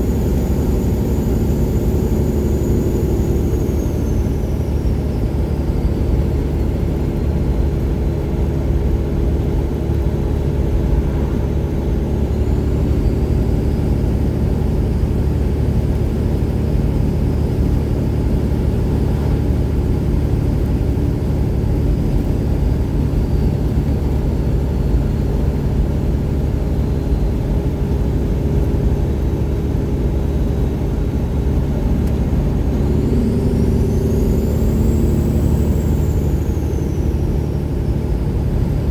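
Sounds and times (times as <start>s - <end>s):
faint turbo whistle: 0.0s - 6.6s, 9.0s - 16.1s, 28.8s - 38.9s
diesel truck engine running: 0.0s - 38.9s.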